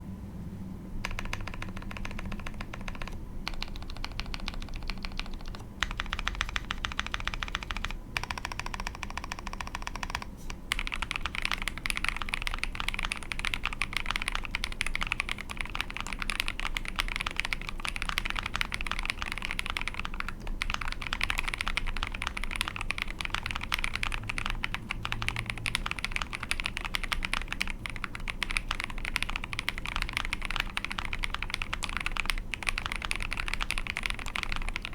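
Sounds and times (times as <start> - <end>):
fast mechanical keyboard typing: 1.0 - 34.9.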